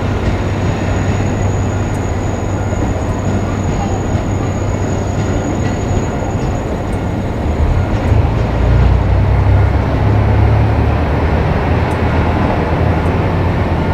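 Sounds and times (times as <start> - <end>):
diesel railcar rumbling: 0.0 - 13.9.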